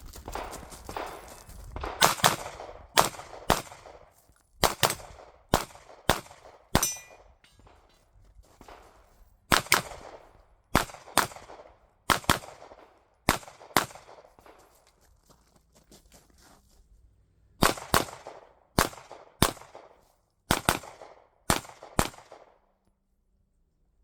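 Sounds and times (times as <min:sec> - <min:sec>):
pistol shots in quick pairs: 0:01.8 - 0:07.2, 0:09.5 - 0:14.6, 0:17.6 - 0:22.6.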